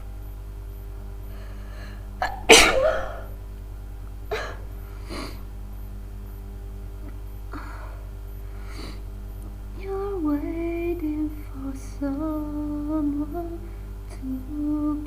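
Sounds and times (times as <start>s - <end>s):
woman sneezing: 2.2s - 3.3s.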